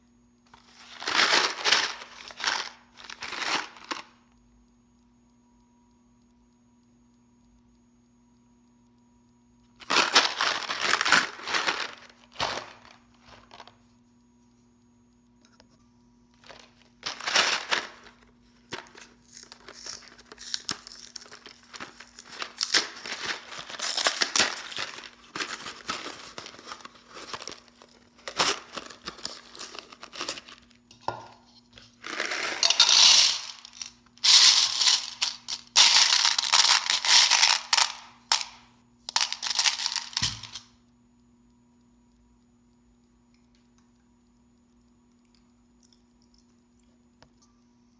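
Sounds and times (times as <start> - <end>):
candy packaging crinkling and tearing: 0.5 - 4.1, 9.8 - 13.7, 16.4 - 30.8, 32.0 - 38.5, 39.1 - 40.6.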